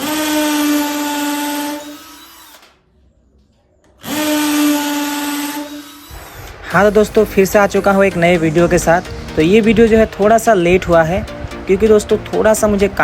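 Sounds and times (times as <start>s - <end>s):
cordless drill running: 0.0s - 2.8s, 4.0s - 6.6s.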